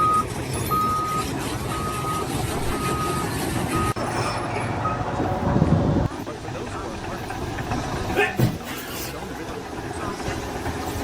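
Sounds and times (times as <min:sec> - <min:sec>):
reversing alarm beeping: 0:00.0 - 0:04.0
low engine rumble: 0:00.0 - 0:11.0.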